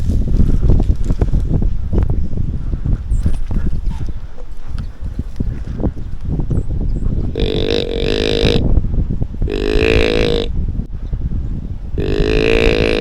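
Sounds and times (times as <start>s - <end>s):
deer call buzzy notes: 9.5s - 10.5s, 12.0s - 13.0s.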